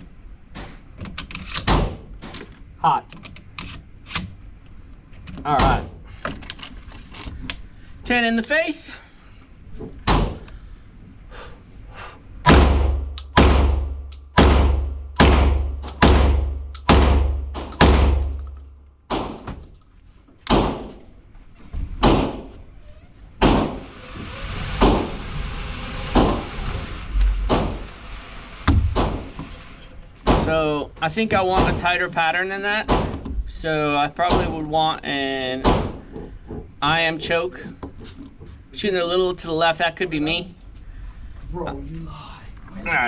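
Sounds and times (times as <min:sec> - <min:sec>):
quieter gunshots: 0:12.4 - 0:18.3
shotgun shots: 0:12.5 - 0:18.3.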